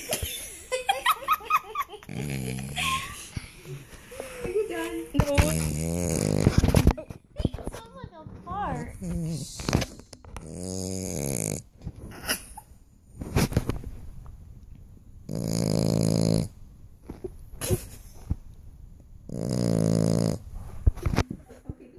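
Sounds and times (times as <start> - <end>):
dog snoring: 2.1 - 3.0, 5.2 - 6.9, 8.7 - 12.4, 15.2 - 16.6, 19.2 - 20.6
dog breathing: 8.6 - 12.4.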